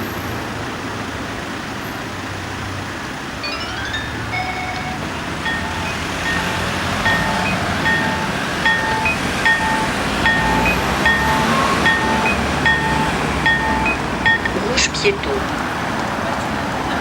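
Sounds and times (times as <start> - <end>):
traffic noise: 0.0 - 17.0
two-tone electronic beeps: 3.4 - 15.3.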